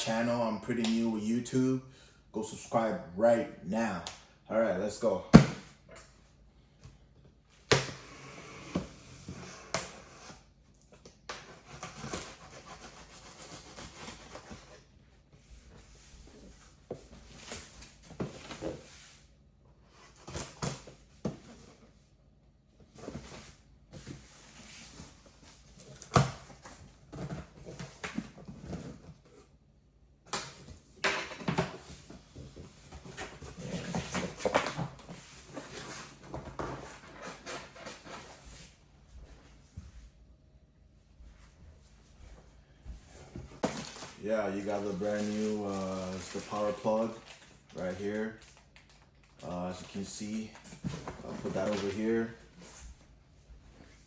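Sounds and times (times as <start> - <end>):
cardboard and packing rustling: 11.6 - 19.3, 22.8 - 29.5, 30.4 - 40.0, 41.4 - 54.0.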